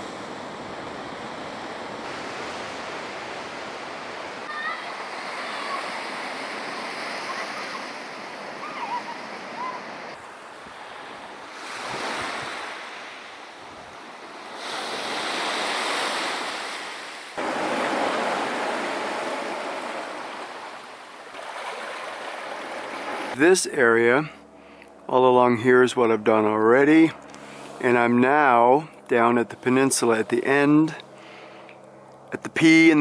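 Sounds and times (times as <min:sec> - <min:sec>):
surf on rocky shore: 0:00.0 - 0:24.1.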